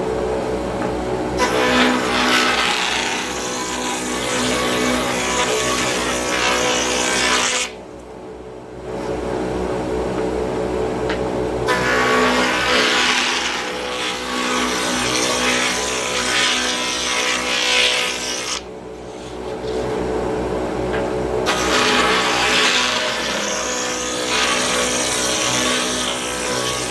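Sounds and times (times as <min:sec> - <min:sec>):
router motor whine: 0:21.5 - 0:26.9.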